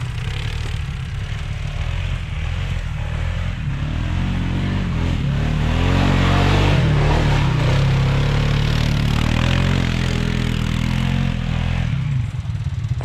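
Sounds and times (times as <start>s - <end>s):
vehicle engine running: 0.0s - 5.8s.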